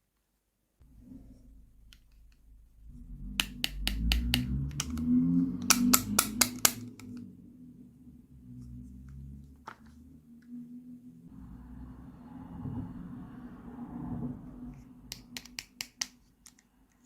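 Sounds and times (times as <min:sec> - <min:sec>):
plastic toy pieces clicking: 0:05.6 - 0:07.2, 0:15.1 - 0:17.0.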